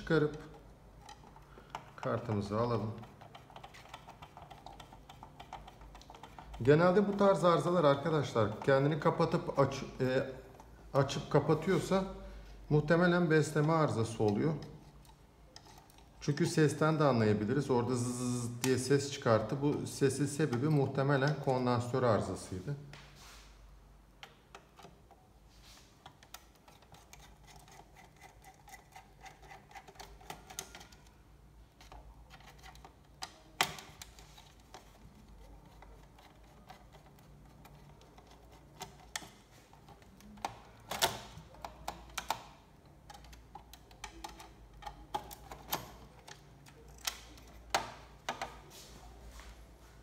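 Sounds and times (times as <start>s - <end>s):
clicks and taps of screwdriver: 0.3s - 7.4s, 35.6s - 48.6s.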